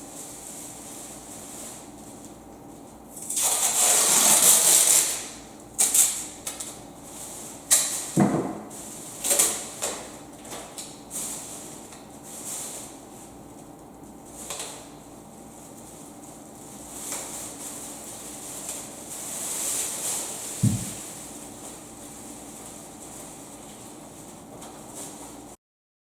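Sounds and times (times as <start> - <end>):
deep thud: 20.6 - 21.0
sharp knocks and clunks: 20.6 - 21.0.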